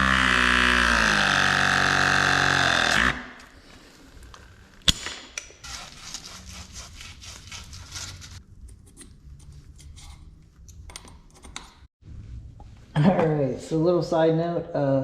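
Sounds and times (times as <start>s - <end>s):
scraping strokes on pipe: 5.6s - 8.4s.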